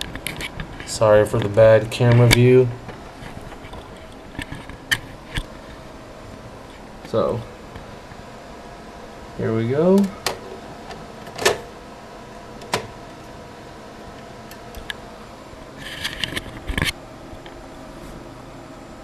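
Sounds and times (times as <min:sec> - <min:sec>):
faint hum: 0:00.0 - 0:19.0
hard drive clattering: 0:09.9 - 0:11.8, 0:12.4 - 0:13.3.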